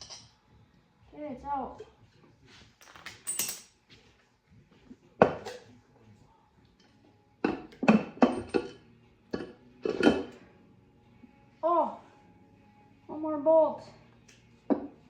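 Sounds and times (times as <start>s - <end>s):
metal tools clanking: 2.8s - 3.8s.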